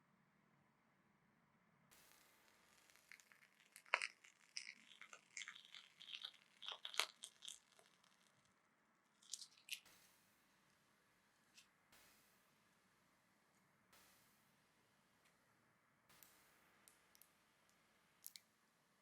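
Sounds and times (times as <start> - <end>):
crinkling and tearing: 3.1 - 8.3, 9.2 - 9.8.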